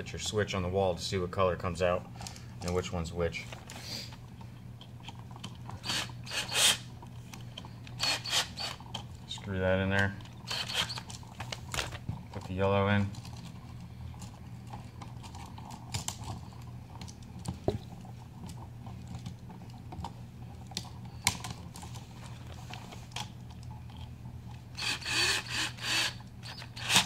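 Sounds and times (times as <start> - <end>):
screwdriver clicks and scrapes: 10.5 - 11.1.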